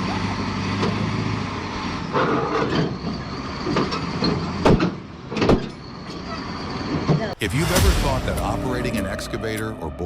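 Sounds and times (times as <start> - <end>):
metal squealing and clanking: 5.3 - 7.4
sharp bang: 7.4 - 10.0.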